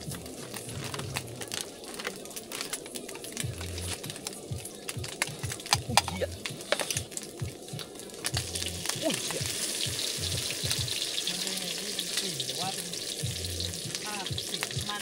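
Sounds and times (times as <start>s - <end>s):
vegetables sizzling in a pan: 6.6s - 15.0s.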